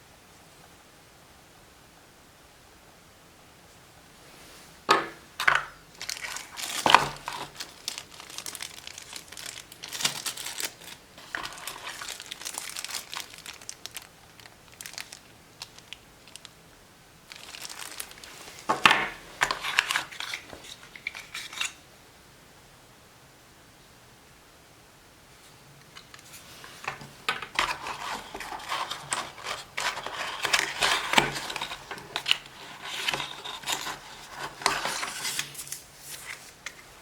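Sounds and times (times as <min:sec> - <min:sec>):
packaging crinkling: 0:05.0 - 0:16.6, 0:17.3 - 0:21.8, 0:25.9 - 0:37.0.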